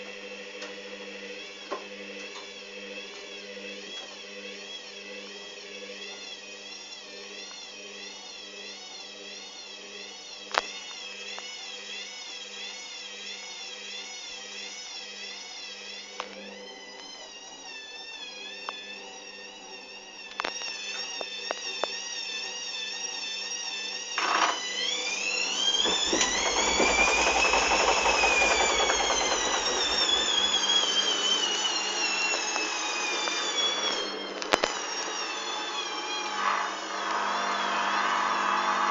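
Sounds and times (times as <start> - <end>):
washing machine motor whining: 0.0 - 38.9
drum rumbling: 25.4 - 31.2.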